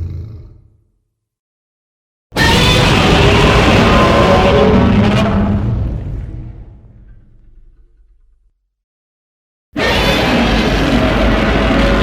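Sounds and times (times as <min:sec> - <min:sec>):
monster roar: 0:02.4 - 0:05.8, 0:09.8 - 0:12.0.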